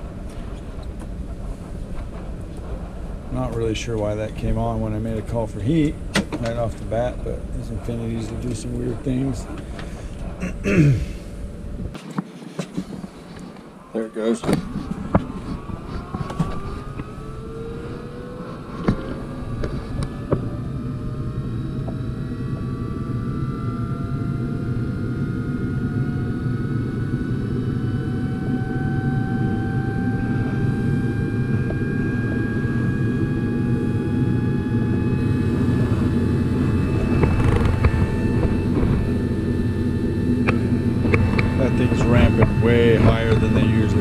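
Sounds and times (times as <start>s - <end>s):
inducer motor whine rising: 0.0s - 12.0s, 12.8s - 44.0s
blower rushing: 0.0s - 44.0s.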